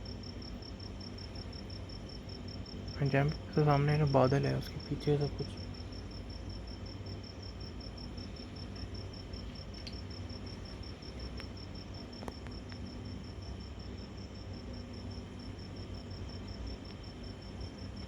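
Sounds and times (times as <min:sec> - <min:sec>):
cricket chirping: 0:00.0 - 0:18.0
steady low hum: 0:00.0 - 0:18.0.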